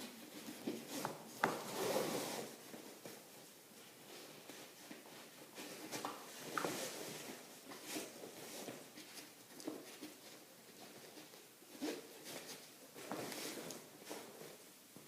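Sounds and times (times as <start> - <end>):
nylon fabric rustling: 0.1 - 9.4.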